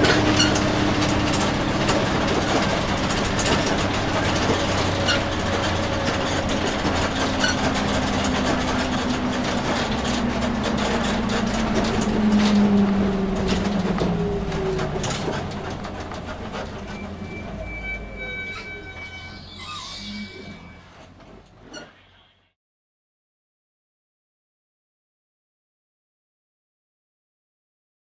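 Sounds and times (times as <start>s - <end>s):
rattles and clicks from bus body: 0.0s - 19.1s, 20.9s - 22.0s
road noise: 0.0s - 21.8s
bus engine drone: 0.0s - 22.0s.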